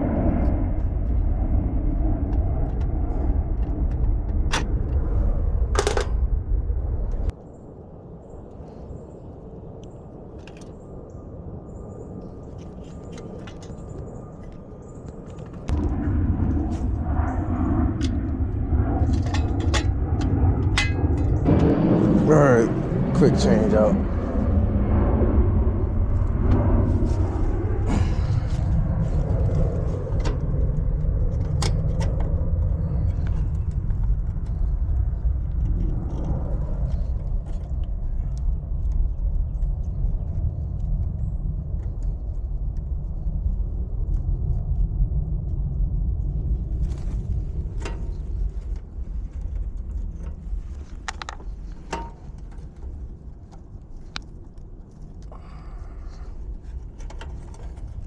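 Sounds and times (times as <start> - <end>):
steady low rumble: 0.0 - 58.0
sharp clicks and knocks: 49.4 - 52.9.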